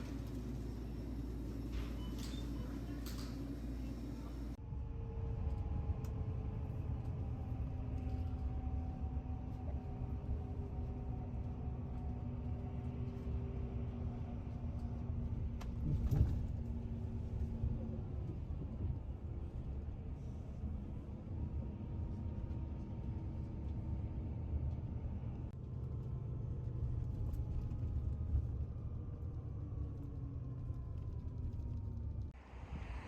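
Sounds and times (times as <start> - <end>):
faint hum tones: 0.0 - 16.2.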